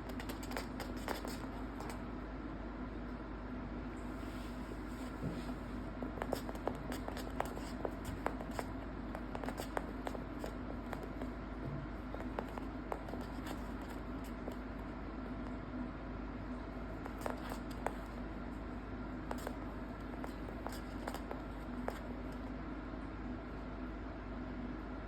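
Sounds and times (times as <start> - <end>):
kitten paws clicking and tapping: 0.0 - 2.2, 5.2 - 15.6, 16.6 - 22.5
steady low hum: 0.0 - 25.0.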